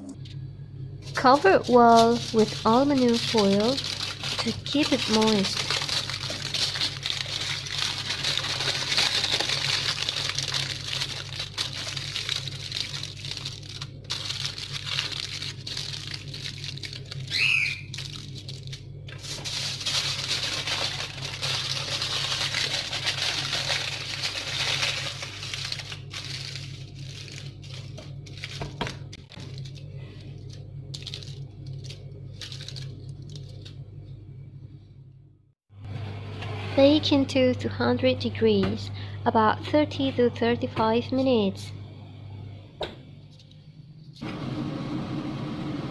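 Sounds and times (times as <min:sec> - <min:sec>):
steady low hum: 0:00.0 - 0:45.9
aluminium foil crinkling: 0:01.0 - 0:33.8
pet bird chirping: 0:17.3 - 0:17.9.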